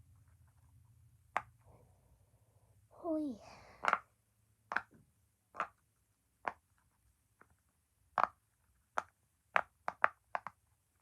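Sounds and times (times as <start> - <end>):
pop-it fidget bubbles popping: 3.7 - 6.7, 7.4 - 11.0.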